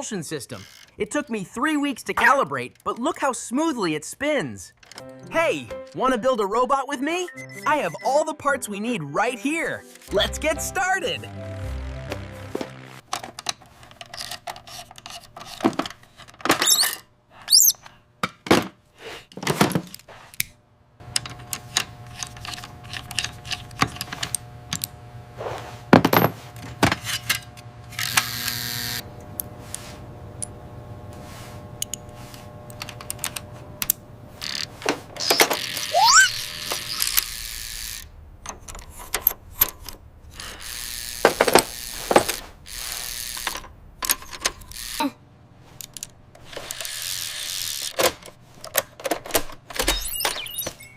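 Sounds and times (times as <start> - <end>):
low steady hum: 20.8 - 35.2.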